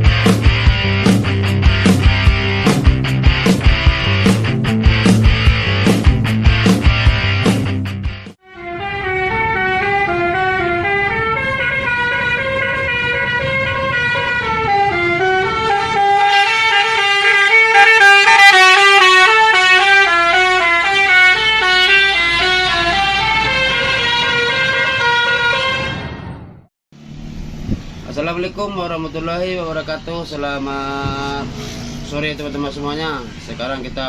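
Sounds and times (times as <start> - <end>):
multi-tone air horn melody: 8.4 - 26.1.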